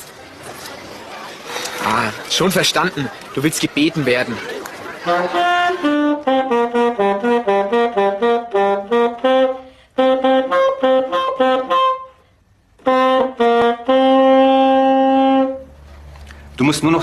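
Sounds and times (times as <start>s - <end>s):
saxophone notes: 5.0s - 15.8s.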